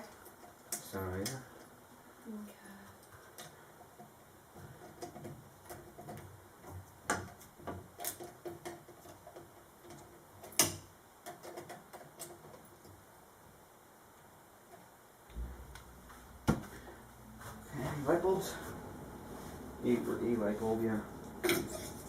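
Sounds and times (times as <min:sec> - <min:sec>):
clicks and knocks of handling parts: 0:00.0 - 0:01.8, 0:02.9 - 0:13.0.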